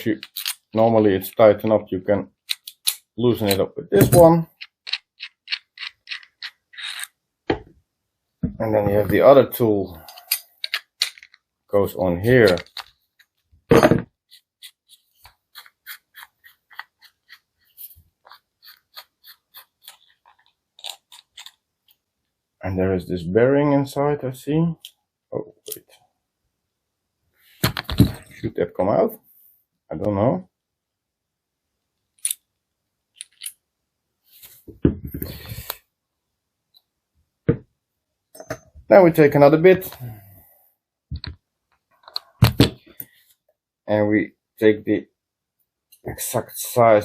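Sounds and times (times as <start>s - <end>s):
plastic parts clicking and scraping: 0.2s - 1.4s, 2.4s - 7.2s, 10.1s - 11.4s, 12.4s - 13.4s, 14.3s - 22.0s, 33.2s - 33.6s.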